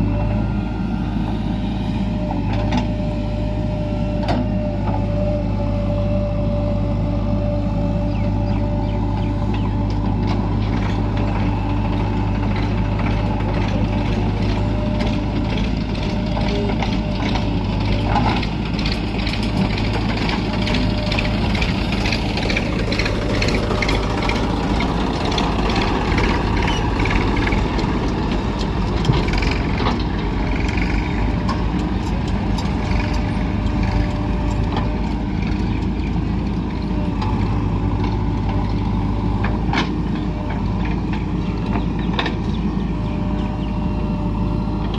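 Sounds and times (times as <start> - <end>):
diesel engine under load: 0.0 - 44.9
machine knocks and clatter: 12.6 - 35.6.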